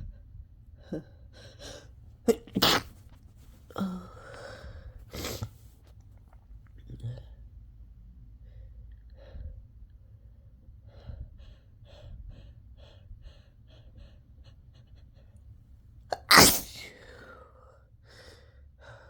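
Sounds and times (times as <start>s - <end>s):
person sneezing: 2.3s - 3.0s, 5.1s - 5.5s, 16.2s - 17.2s
catching breaths: 2.8s - 5.8s.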